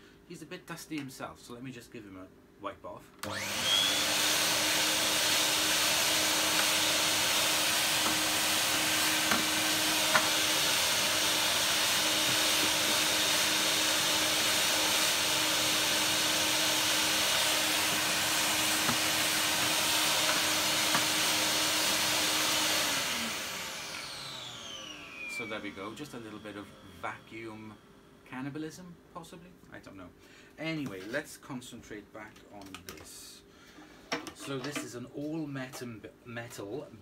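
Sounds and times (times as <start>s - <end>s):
vacuum cleaner running: 3.2s - 27.9s.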